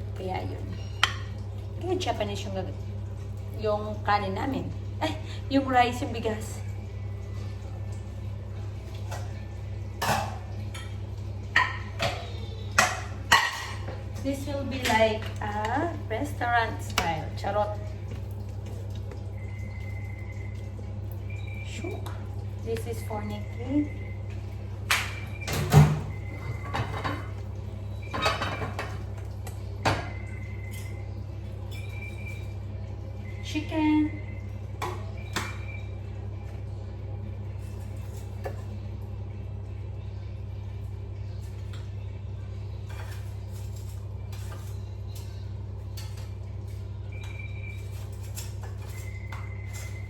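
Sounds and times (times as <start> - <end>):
plates and utensils clinking: 10.0 - 15.9, 24.9 - 31.0.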